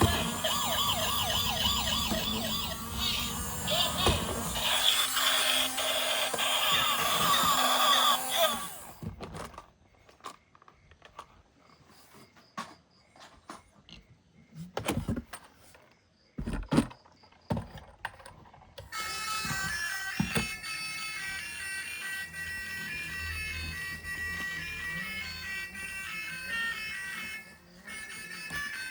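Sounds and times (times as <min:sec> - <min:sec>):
electronic tune: 0:00.0 - 0:05.0
toy electronic siren sound: 0:00.0 - 0:08.9, 0:18.9 - 0:28.9.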